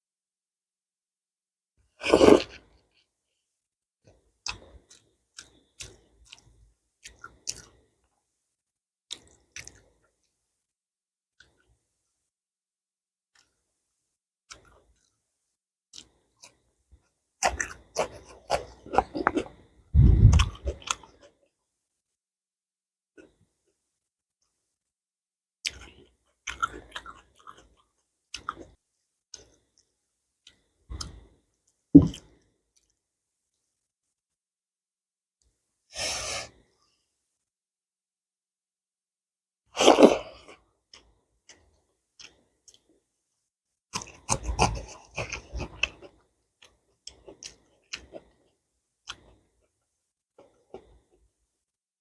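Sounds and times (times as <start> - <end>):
wet chewing sounds: 4.1 - 7.9, 9.1 - 10.1, 17.4 - 21.3, 25.6 - 29.9, 43.9 - 48.4
wet mouth clicks: 20.0 - 21.0.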